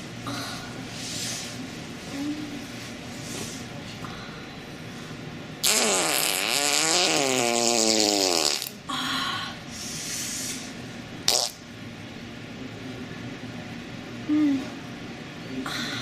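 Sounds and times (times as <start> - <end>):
farts: 5.6 - 8.8, 11.3 - 11.6.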